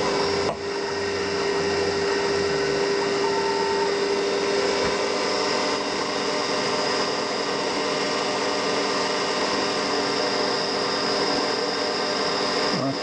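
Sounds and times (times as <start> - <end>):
milling machine spindle whine: 0.0 - 13.0.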